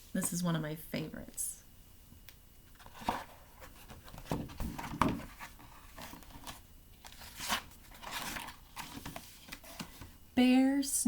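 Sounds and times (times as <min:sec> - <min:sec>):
paper rustling: 0:02.7 - 0:10.0.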